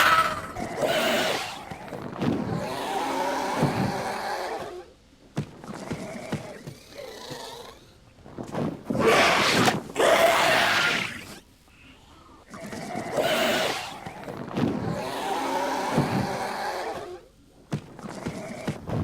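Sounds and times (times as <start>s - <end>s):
harsh creature calls: 0.0s - 4.9s, 9.0s - 11.4s, 12.5s - 17.2s.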